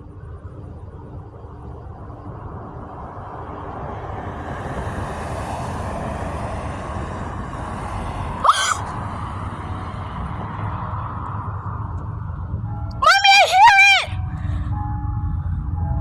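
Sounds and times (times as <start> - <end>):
passing traffic rumble: 0.0 - 16.0
high-pitched vocal gasp: 8.4 - 8.8, 13.0 - 14.7.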